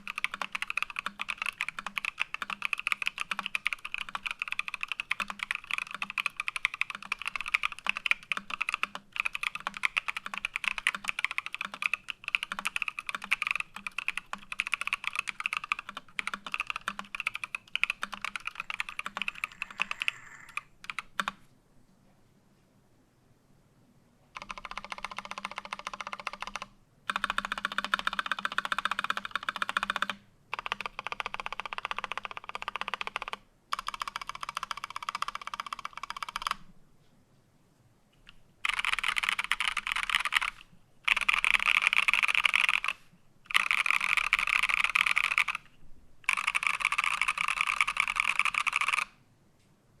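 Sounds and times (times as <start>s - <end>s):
mechanical keyboard typing: 0.0s - 21.4s, 24.3s - 36.7s, 38.2s - 49.2s.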